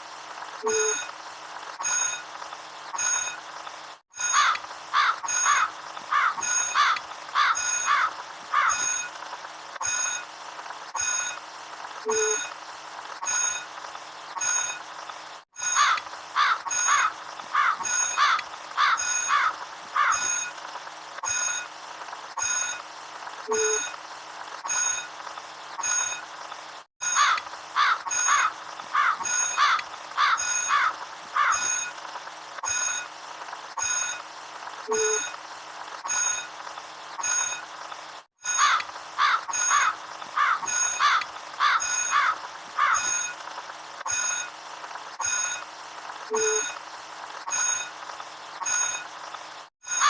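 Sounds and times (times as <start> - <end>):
electronic chirping beeps: 0.6 - 1.1, 1.8 - 2.3, 2.9 - 3.4, 5.2 - 5.8, 7.6 - 7.9, 8.7 - 9.2, 9.8 - 10.3, 10.9 - 11.4, 12.0 - 12.6, 13.2 - 16.0, 16.6 - 18.2, 19.0 - 19.4, 20.1 - 21.7, 22.4 - 22.8, 23.4 - 24.0, 24.6 - 27.2, 31.5 - 33.1, 33.8 - 34.2, 34.8 - 35.4, 36.0 - 38.8, 39.5 - 41.0, 41.8 - 42.2, 43.0 - 44.6, 45.2 - 46.8, 47.4 - 50.0
steady high electronic tones: 0.6 - 1.2, 2.9 - 3.5, 7.6 - 50.0.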